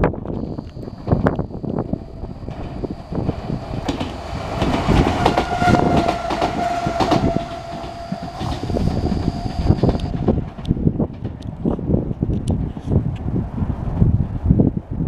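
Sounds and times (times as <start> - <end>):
long steady tone: 0.0 - 10.7
train wheels clattering: 1.7 - 11.8.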